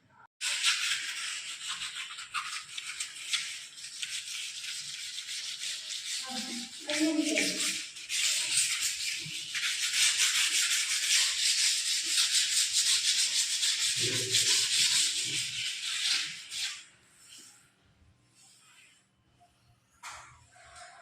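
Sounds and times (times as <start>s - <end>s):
scrubbing hard surface: 0.4s - 17.8s.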